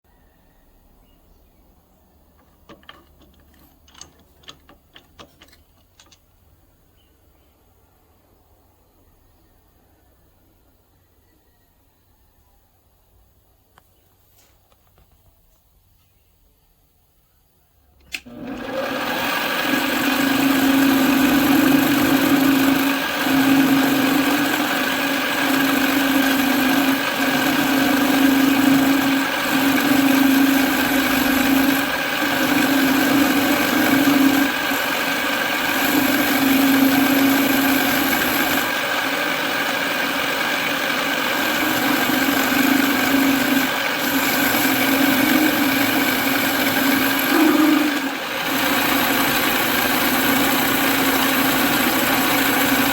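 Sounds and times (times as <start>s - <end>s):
machine motor humming: 18.1s - 52.9s.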